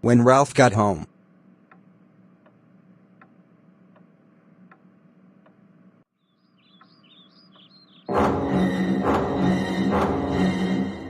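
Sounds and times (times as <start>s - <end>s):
bird chirps: 6.1s - 8.1s
loud music: 8.1s - 11.0s.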